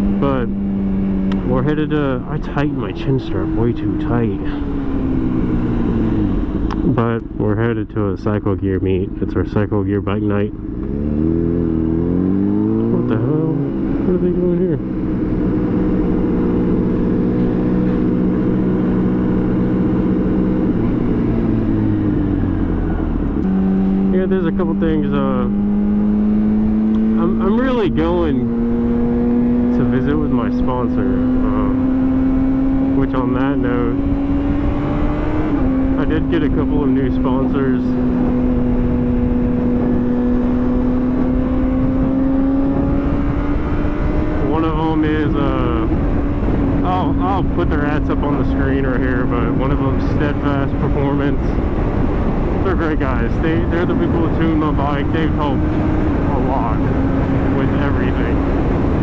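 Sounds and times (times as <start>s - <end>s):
wind rumble: 0.0s - 59.0s
motorcycle engine running: 9.0s - 59.0s
wind rush: 37.7s - 59.0s.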